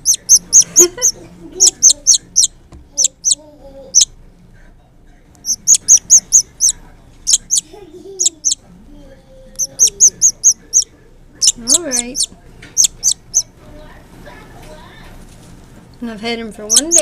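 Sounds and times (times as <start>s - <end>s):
baby bird chirping: 0.0s - 4.2s, 5.4s - 8.7s, 9.4s - 13.6s, 16.5s - 17.0s.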